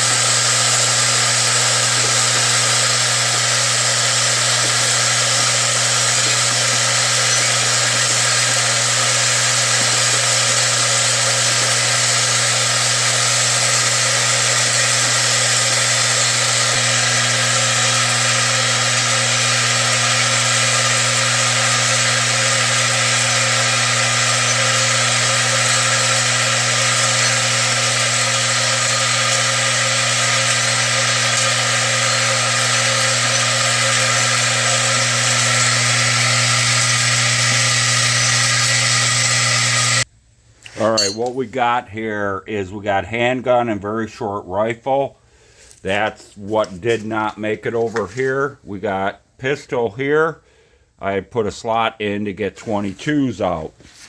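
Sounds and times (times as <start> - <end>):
machine electric hum: 0.0 - 40.1
cartridges rattling: 0.3 - 12.7, 40.7 - 41.4.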